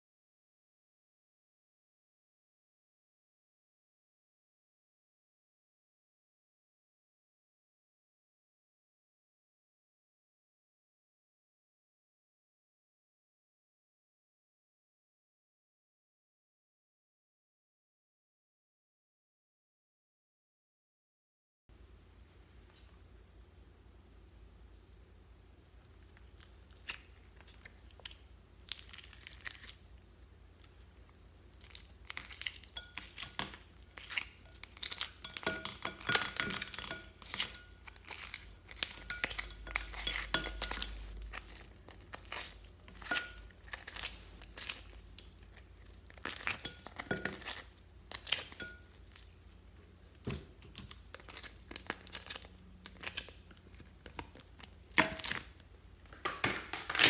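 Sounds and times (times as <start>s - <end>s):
slime crackling and popping: 26.4s - 29.8s, 31.6s - 49.6s, 50.2s - 57.0s.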